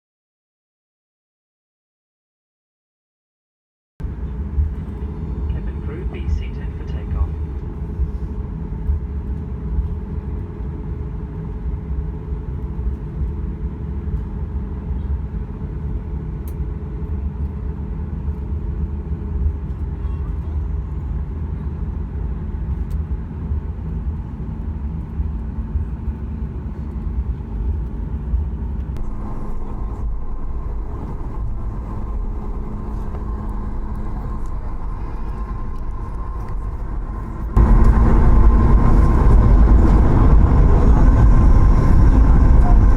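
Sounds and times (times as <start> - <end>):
high steady whine: 4.0 - 15.2, 21.0 - 42.9
jet engine rumble in cabin: 4.0 - 42.9.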